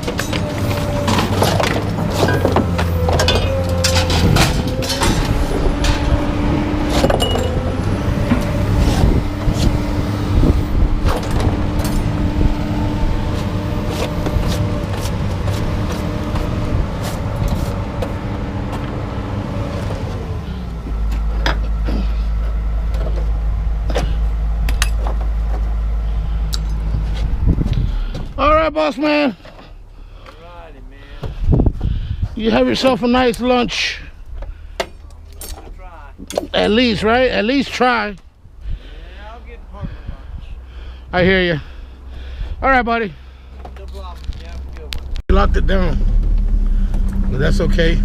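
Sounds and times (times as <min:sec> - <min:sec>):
sharp knocks and clanks: 0:00.0 - 0:09.7
truck engine running: 0:00.0 - 0:48.0.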